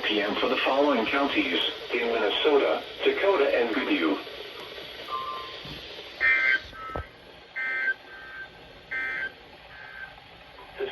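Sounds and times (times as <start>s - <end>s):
harsh two-tone data warble: 5.0s - 10.9s.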